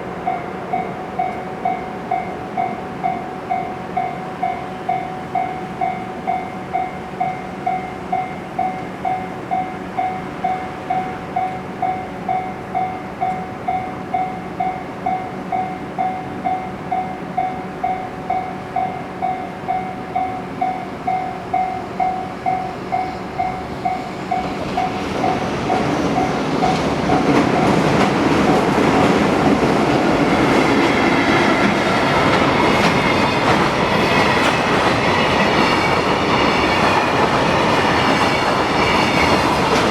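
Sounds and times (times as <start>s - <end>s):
level-crossing bell ringing: 0.0s - 28.8s
train passing: 0.0s - 39.9s.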